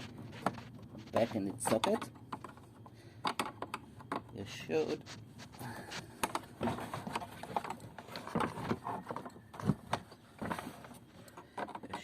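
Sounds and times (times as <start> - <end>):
plastic parts clicking and knocking: 1.6 - 4.5, 5.9 - 12.0.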